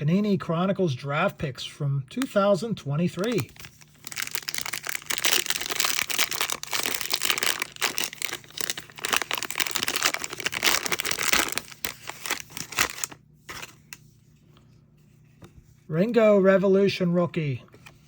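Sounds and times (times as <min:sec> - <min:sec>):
wrapper tearing and crinkling: 0:03.2 - 0:13.9.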